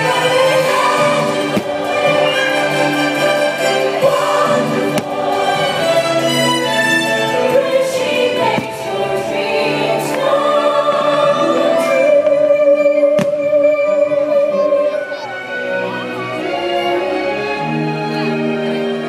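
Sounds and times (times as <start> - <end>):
choir singing held notes: 0.0 - 14.5
orchestral music: 0.0 - 19.0.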